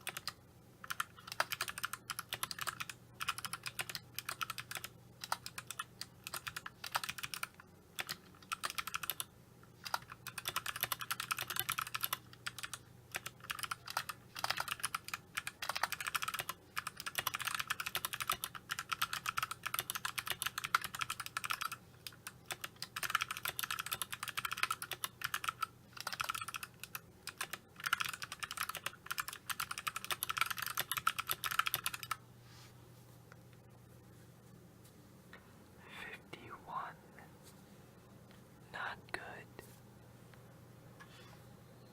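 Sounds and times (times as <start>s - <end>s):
mechanical keyboard clicky typing: 0.0s - 32.2s.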